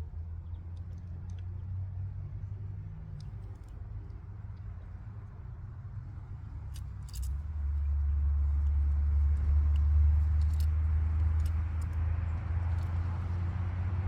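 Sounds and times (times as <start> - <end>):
light handling clicks: 6.7 - 7.9, 8.6 - 13.4.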